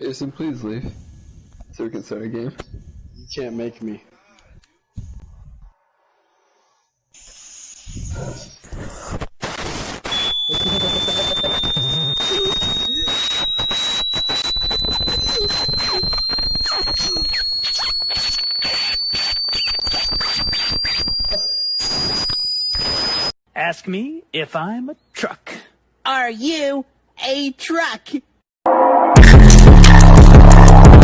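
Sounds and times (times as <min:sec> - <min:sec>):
harsh distorted noise: 0:09.4 - 0:21.3, 0:29.1 - 0:31.0
high whistling tone: 0:10.1 - 0:23.3.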